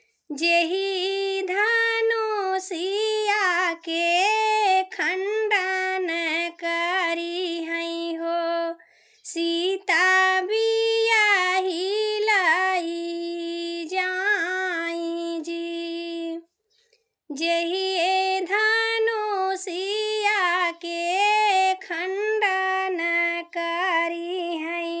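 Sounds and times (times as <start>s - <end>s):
woman singing unaccompanied: 0.3s - 16.5s, 17.3s - 25.0s.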